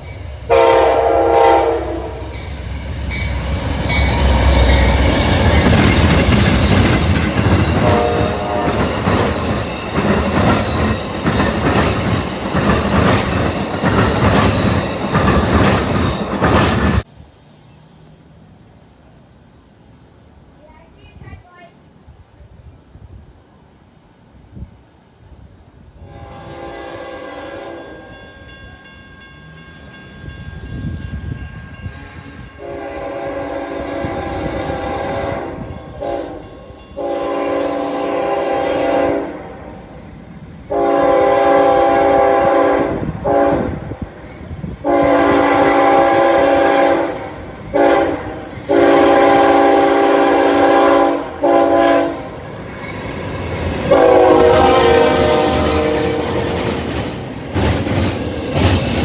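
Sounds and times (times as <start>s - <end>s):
multi-chime train horn blasts: 0.0s - 5.6s, 7.4s - 11.0s, 26.0s - 39.8s, 40.7s - 43.8s, 44.8s - 52.4s, 53.8s - 56.7s
low rumble of train: 0.0s - 59.0s.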